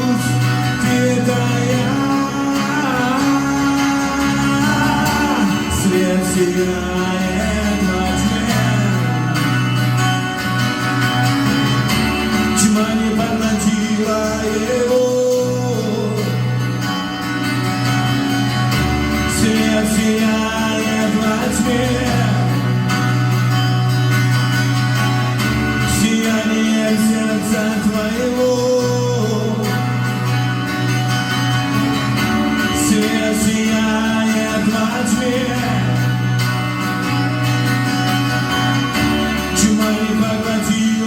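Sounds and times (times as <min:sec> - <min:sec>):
wordless vocals: 0:00.0 - 0:10.0, 0:12.4 - 0:17.0, 0:19.0 - 0:23.5, 0:25.6 - 0:30.6, 0:32.3 - 0:37.3, 0:38.7 - 0:41.0
bass: 0:00.0 - 0:41.0
guitar: 0:00.0 - 0:41.0.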